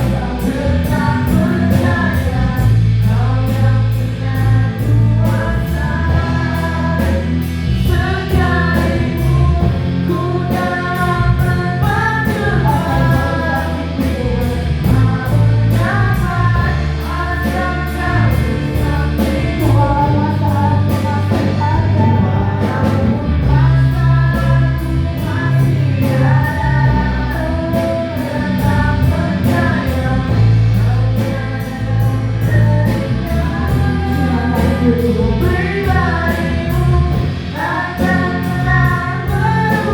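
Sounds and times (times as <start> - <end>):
worship song with band: 0.0 - 39.9.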